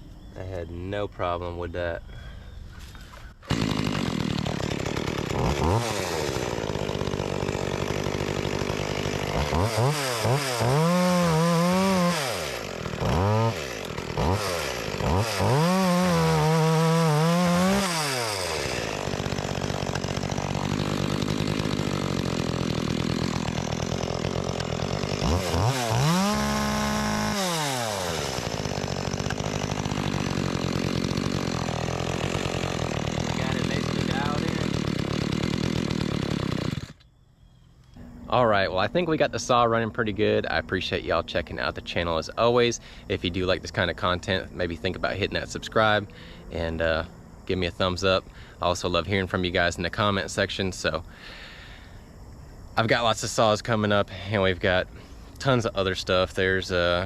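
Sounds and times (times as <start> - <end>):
chainsaw idling and revving: 3.4 - 37.1, 53.3 - 57.0.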